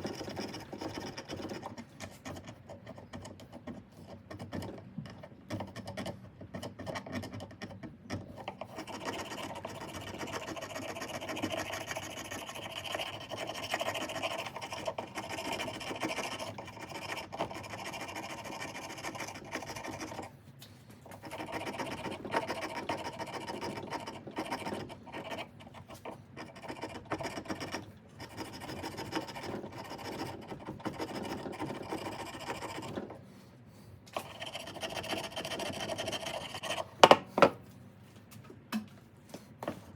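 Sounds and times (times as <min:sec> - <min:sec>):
hand filing a ratchet handle: 0:08.5 - 0:20.3, 0:21.1 - 0:33.0, 0:34.2 - 0:36.9.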